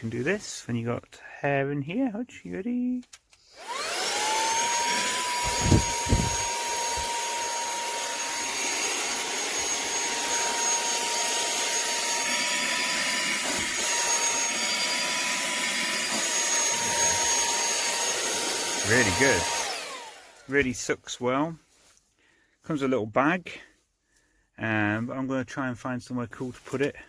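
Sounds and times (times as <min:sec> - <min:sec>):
handheld vacuum motor whine: 0:03.4 - 0:20.6.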